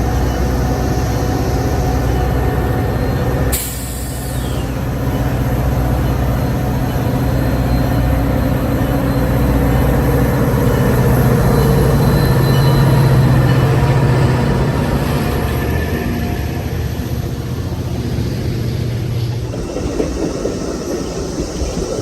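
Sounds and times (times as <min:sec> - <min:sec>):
train humming: 0:00.0 - 0:22.0
air brake hiss: 0:03.5 - 0:04.6.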